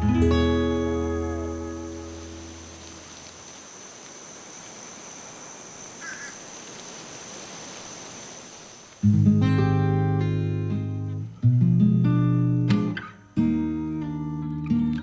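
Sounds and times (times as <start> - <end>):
acoustic guitar music: 0.0 - 3.0, 9.0 - 15.0
steady hiss: 0.0 - 9.2.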